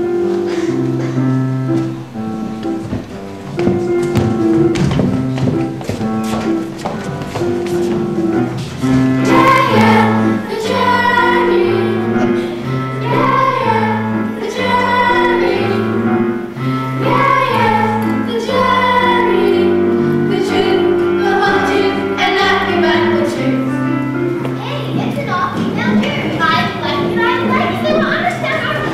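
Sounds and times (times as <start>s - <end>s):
children's choir singing: 0.0s - 28.9s
instrumental accompaniment: 0.0s - 28.9s.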